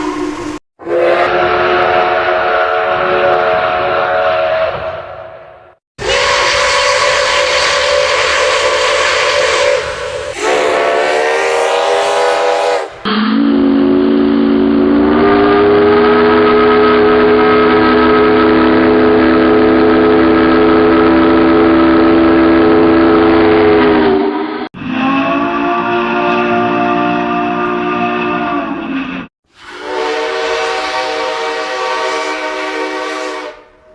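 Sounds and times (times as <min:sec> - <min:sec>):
chime train whistle: 0:00.0 - 0:05.0, 0:06.0 - 0:19.7, 0:29.6 - 0:33.7.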